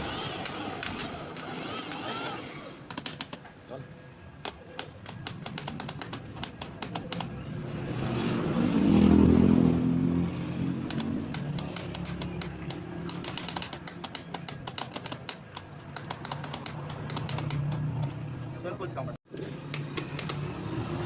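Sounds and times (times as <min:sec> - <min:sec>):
sharp clicks: 0:00.2 - 0:03.5, 0:04.4 - 0:07.4, 0:10.8 - 0:18.2, 0:19.7 - 0:20.5.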